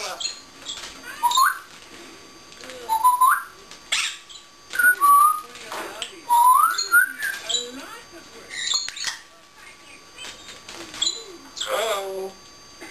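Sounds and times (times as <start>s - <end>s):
harsh parrot noise: 0.1s - 1.7s, 2.9s - 5.4s
parrot whistling: 1.1s - 1.7s, 2.9s - 5.5s, 6.3s - 7.8s.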